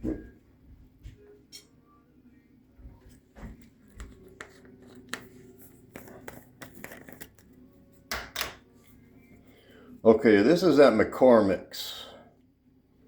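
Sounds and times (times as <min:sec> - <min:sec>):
low steady hum: 0:00.0 - 0:13.0
hands handling containers: 0:03.4 - 0:08.4.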